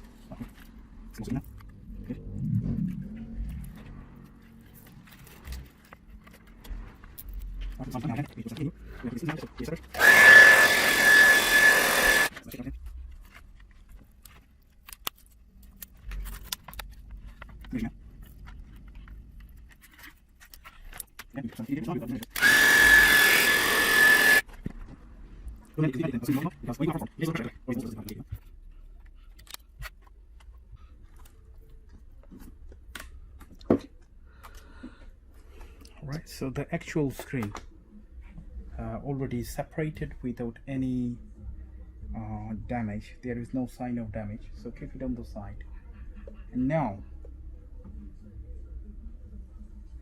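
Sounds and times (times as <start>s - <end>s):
hot-air blower whining: 9.9s - 12.3s, 22.4s - 24.4s.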